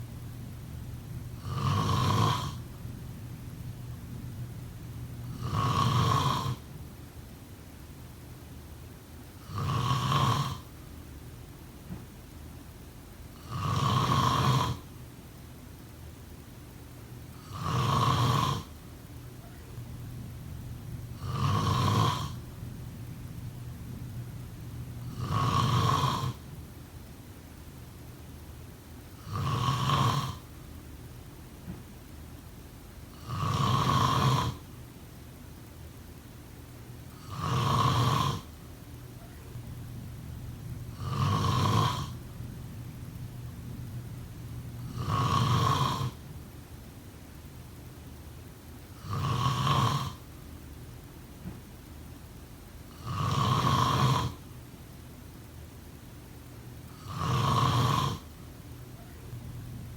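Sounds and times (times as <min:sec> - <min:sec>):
quiet breathing: 0:00.0 - 0:06.8, 0:17.3 - 0:26.8, 0:37.0 - 0:46.6
person snoring: 0:01.3 - 0:02.8, 0:05.2 - 0:06.7, 0:09.4 - 0:10.7, 0:13.4 - 0:14.9, 0:17.4 - 0:18.7, 0:21.0 - 0:22.7, 0:24.5 - 0:26.4, 0:29.2 - 0:30.5, 0:33.1 - 0:34.6, 0:37.2 - 0:38.5, 0:39.5 - 0:46.2, 0:49.0 - 0:50.2, 0:52.9 - 0:54.4, 0:56.9 - 0:58.3.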